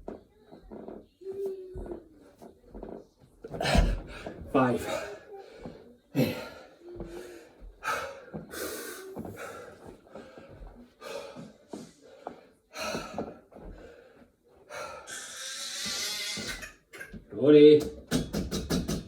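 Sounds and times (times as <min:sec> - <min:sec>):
man breathing heavily: 0:03.6 - 0:16.0.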